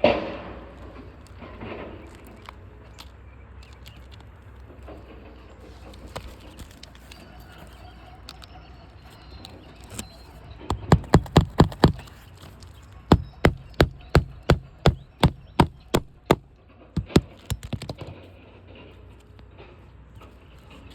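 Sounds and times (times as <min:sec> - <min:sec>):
light taps and scrapes: 0:00.0 - 0:14.1.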